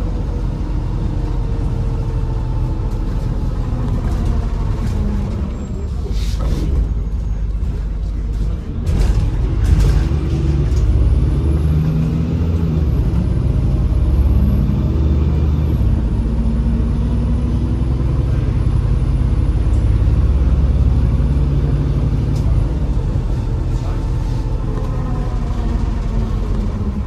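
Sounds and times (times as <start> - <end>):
bus engine droning: 0.0 - 27.0.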